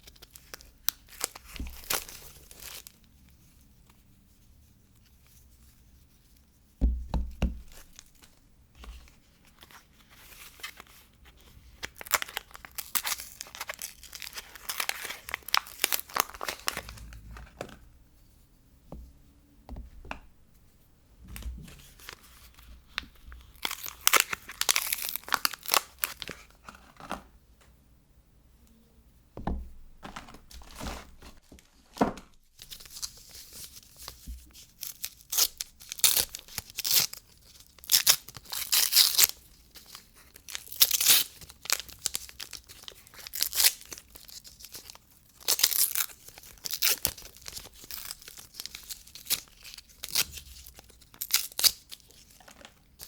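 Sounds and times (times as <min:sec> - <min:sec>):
soap wrapping tearing and crinkling: 0:00.0 - 0:03.1, 0:07.6 - 0:17.3, 0:21.8 - 0:27.3, 0:32.3 - 0:53.0.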